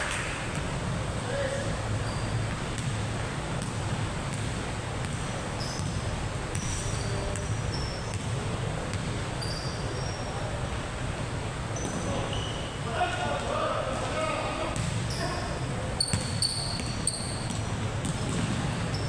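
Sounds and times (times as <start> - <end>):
background din of hall: 0.0 - 19.0
sneaker squeaks on court floor: 2.0 - 2.9, 5.6 - 8.3, 8.9 - 10.4, 11.7 - 12.9, 14.8 - 19.0
basketball bouncing: 2.5 - 9.2, 14.8 - 15.0, 16.0 - 18.8.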